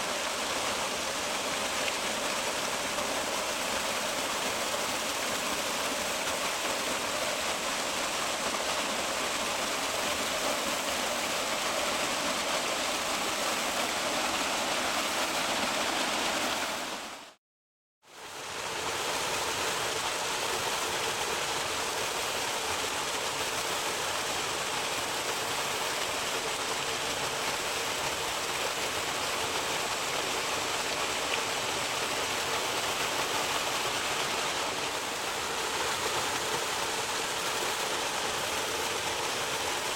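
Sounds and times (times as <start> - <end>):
waterfall rushing: 18.4 - 39.9.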